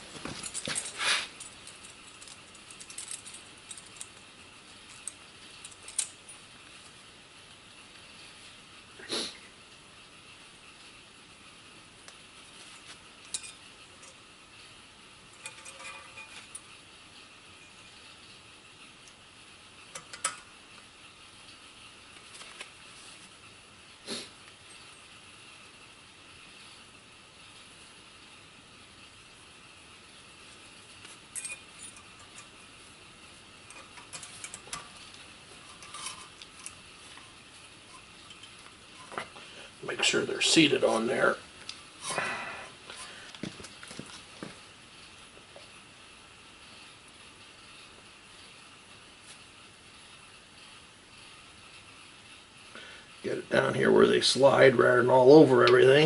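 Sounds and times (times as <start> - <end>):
faint steady hiss: 0.0 - 56.0
metal hardware clicking and clinking: 0.2 - 6.4, 12.8 - 14.2, 15.3 - 16.7, 19.9 - 20.6, 31.0 - 32.8, 33.6 - 42.2.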